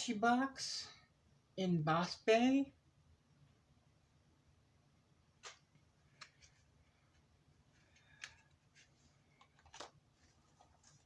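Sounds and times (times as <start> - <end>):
light rustles of small boxes: 5.4 - 11.0.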